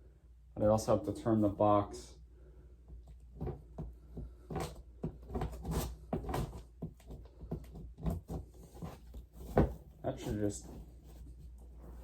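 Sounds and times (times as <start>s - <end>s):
cardboard box knocks and scrapes: 3.4s - 12.0s.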